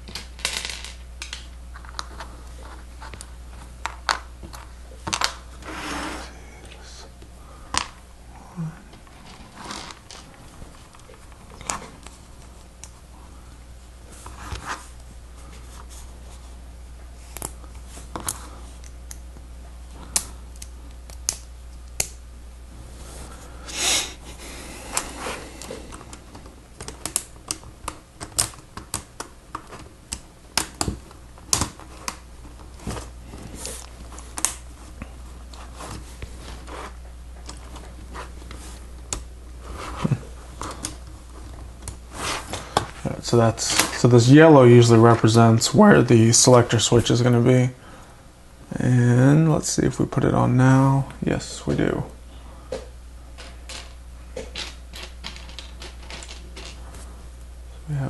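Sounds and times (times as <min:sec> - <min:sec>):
rustle of plastic parts: 0:53.4 - 0:57.1.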